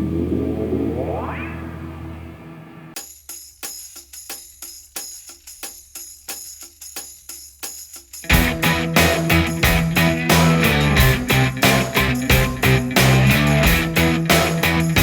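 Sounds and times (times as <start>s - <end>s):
light percussion beat: 3.0s - 15.0s
full band with bass: 8.3s - 15.0s.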